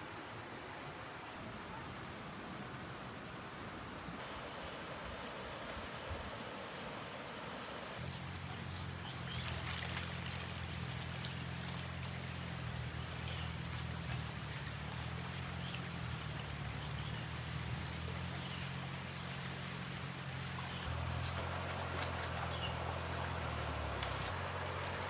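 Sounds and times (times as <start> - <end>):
water noise: 8.0 - 25.0.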